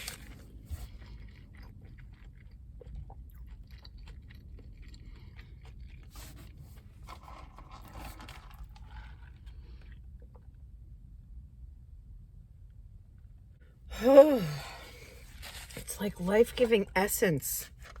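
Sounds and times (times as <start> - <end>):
person chewing crunchy food: 0.0 - 10.6, 14.5 - 16.0.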